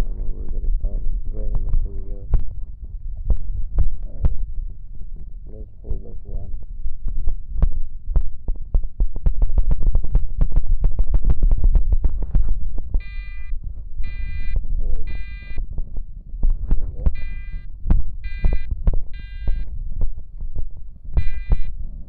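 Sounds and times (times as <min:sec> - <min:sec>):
low thumps and clicks: 0:00.0 - 0:22.0
fire alarm horn: 0:13.0 - 0:15.6, 0:17.2 - 0:19.6, 0:21.2 - 0:21.7.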